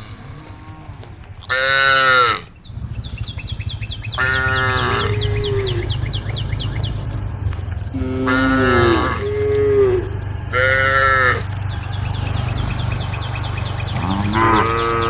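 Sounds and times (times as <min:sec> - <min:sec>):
cows mooing: 0:00.0 - 0:02.6, 0:04.0 - 0:15.0
steady low hum: 0:00.0 - 0:15.0
rapid high chirping: 0:02.5 - 0:15.0.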